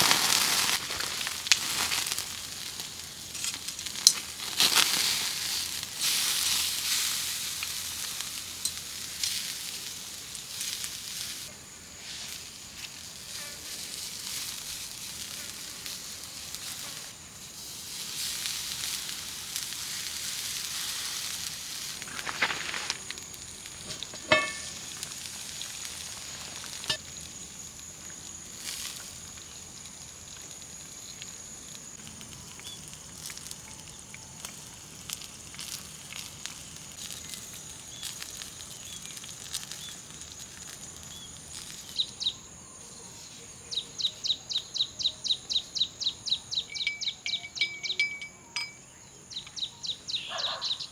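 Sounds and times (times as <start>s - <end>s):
food sizzling over campfire: 0.0s - 48.0s
faint high tone: 46.8s - 49.0s.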